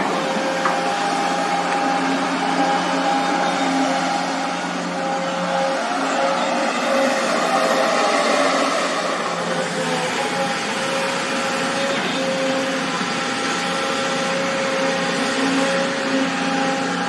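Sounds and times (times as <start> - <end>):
excavator engine and hydraulics: 0.0 - 17.0.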